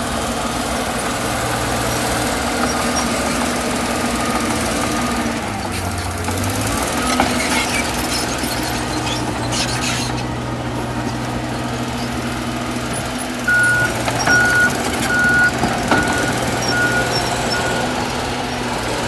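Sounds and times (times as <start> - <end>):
heavy vehicle engine running: 0.0 - 19.0
reversing alarm beeping: 13.5 - 18.1.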